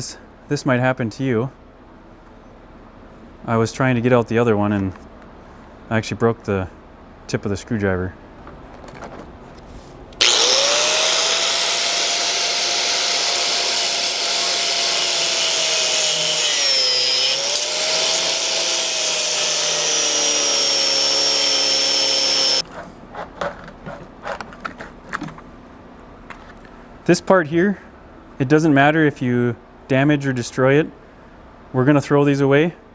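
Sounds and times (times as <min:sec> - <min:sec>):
power tool motor running: 0:10.2 - 0:22.6.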